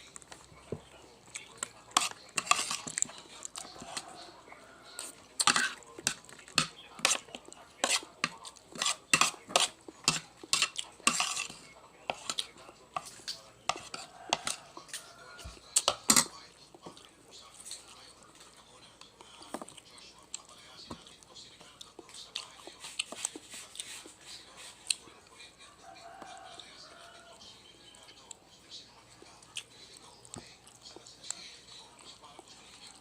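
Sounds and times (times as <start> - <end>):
cutlery clinking on a plate: 1.9 - 4.2, 5.0 - 16.4.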